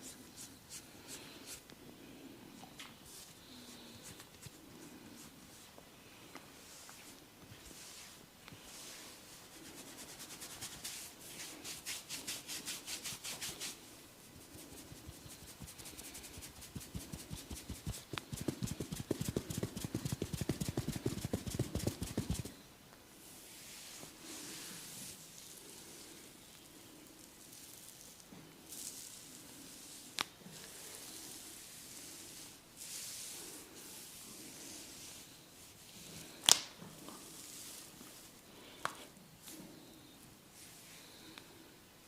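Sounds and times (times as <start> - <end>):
hands rubbing skin: 7.7 - 22.6
rapid hand strikes: 14.9 - 22.5.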